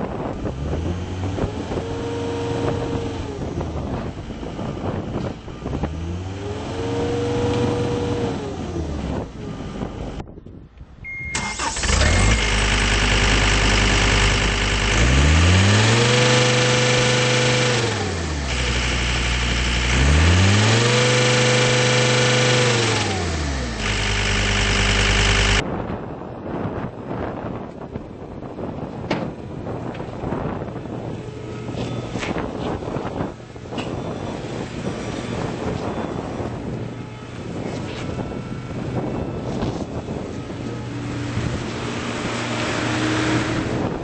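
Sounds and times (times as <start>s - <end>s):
diesel engine revving: 0.1s - 10.2s, 11.4s - 25.6s, 30.2s - 44.0s
short beep: 11.0s - 11.5s.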